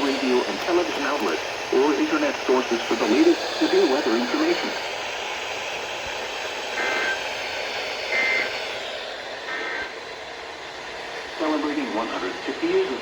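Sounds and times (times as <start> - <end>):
radio hiss: 0.0 - 10.0, 11.2 - 13.0.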